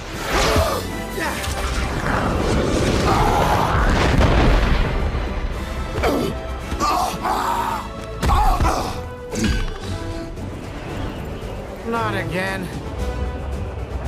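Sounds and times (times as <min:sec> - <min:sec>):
orchestral film music: 0:00.0 - 0:14.0
heavy low booms and crashes: 0:01.8 - 0:05.6.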